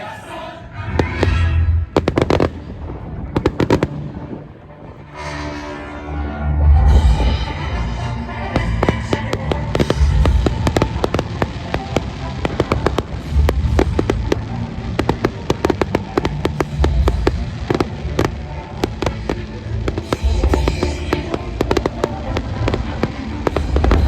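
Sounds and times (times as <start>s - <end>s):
music: 0.0s - 24.0s
fireworks cracking: 1.0s - 4.4s, 8.4s - 24.0s
deep firework thumps: 8.6s - 24.0s.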